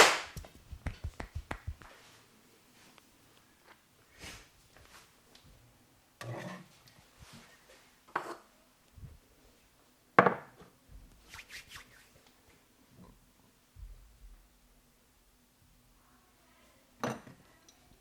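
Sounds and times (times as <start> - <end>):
hands striking head: 0.0 - 1.9.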